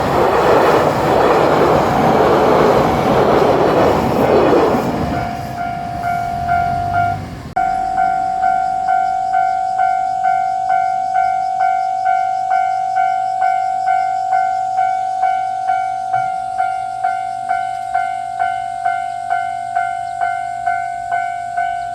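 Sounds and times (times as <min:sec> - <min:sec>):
level crossing bell clanging: 0:05.1 - 0:21.9.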